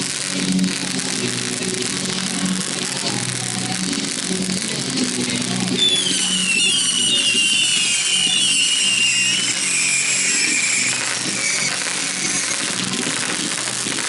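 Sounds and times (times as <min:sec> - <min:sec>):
whistling fireworks: 0:04.0 - 0:14.0.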